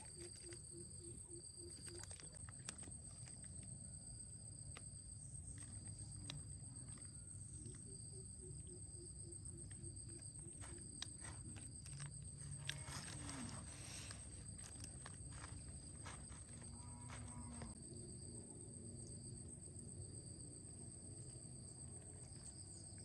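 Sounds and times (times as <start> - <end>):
insect buzzing: 0.0 - 18.0
insects trilling: 0.0 - 23.0
small clicks: 9.7 - 16.2.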